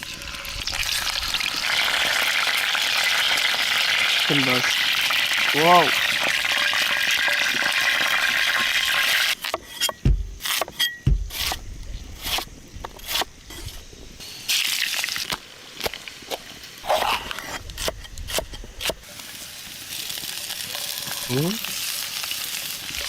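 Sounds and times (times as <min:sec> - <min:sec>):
steady hiss: 0:00.0 - 0:09.6, 0:11.2 - 0:23.0
heavy thumps: 0:10.0 - 0:10.4, 0:11.0 - 0:11.4.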